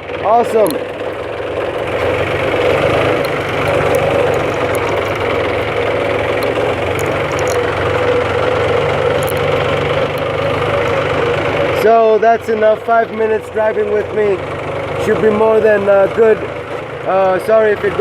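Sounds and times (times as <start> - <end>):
tractor engine droning: 0.0 - 18.0
faint rattling clicks: 0.5 - 11.6.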